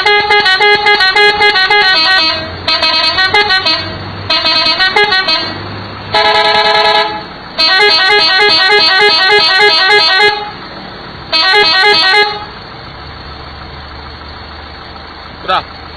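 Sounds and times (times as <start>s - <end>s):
musical air horn melodies: 0.0s - 10.5s, 11.3s - 12.5s.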